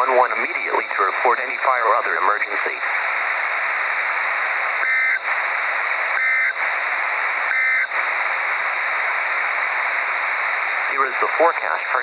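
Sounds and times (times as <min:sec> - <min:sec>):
radio static hiss: 0:00.0 - 0:12.0
buzzing two-tone data chirp: 0:04.8 - 0:05.3, 0:07.4 - 0:08.0.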